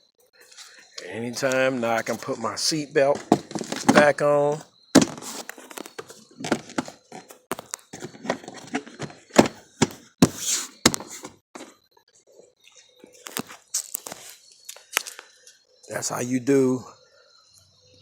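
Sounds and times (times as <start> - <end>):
parts knocking and clattering: 1.4 - 2.4, 3.0 - 11.7.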